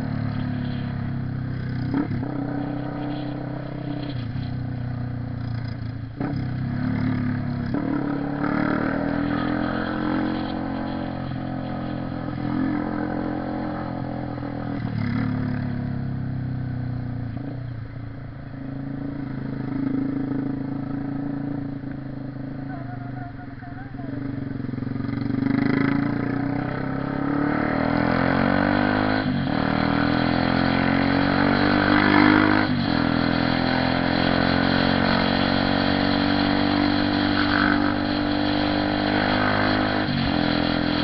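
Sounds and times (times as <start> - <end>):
motorcycle engine revving: 0.0 - 17.8, 18.6 - 41.0.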